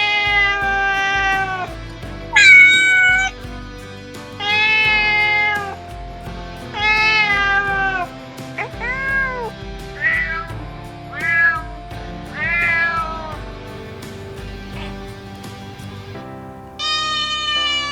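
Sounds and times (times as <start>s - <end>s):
background music: 0.0s - 17.9s
cat meowing: 14.7s - 15.3s.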